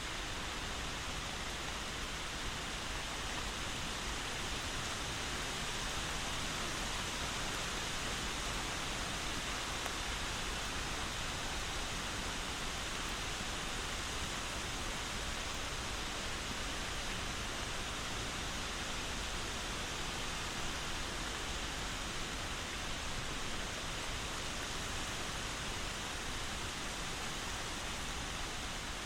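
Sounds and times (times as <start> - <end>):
steady rain hiss: 0.0 - 29.0.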